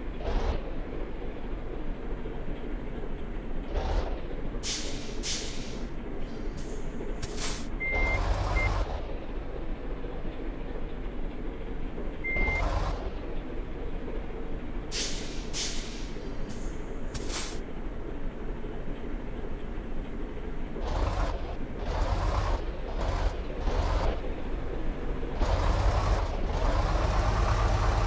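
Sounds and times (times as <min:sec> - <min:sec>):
large vehicles passing: 0:00.0 - 0:28.0
brief hisses: 0:15.0 - 0:17.6.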